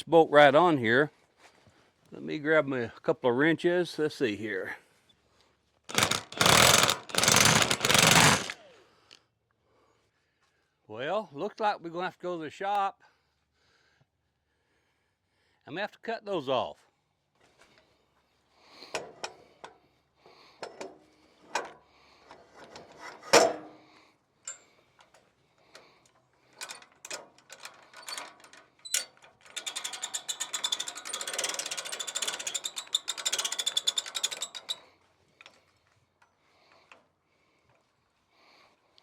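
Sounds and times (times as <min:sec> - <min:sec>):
ratchet wrench clicking rapidly: 0:05.9 - 0:08.6, 0:28.9 - 0:34.8.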